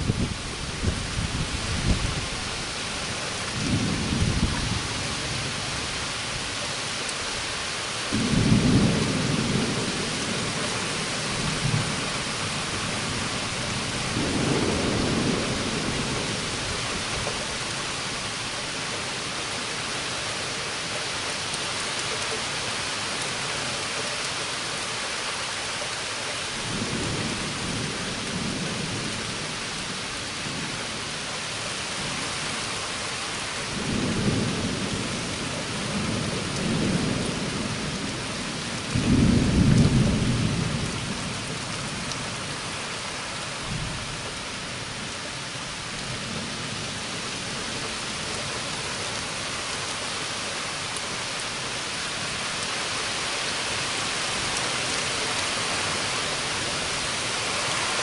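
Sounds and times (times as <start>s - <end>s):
steady rain: 0.0s - 58.0s
low rolls of thunder: 3.5s - 5.6s, 8.1s - 17.3s, 33.7s - 42.6s.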